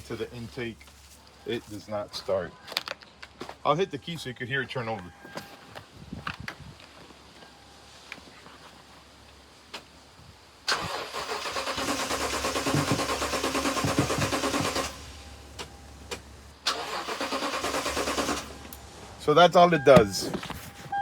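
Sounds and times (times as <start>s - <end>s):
engine starter cranking: 10.7s - 18.9s.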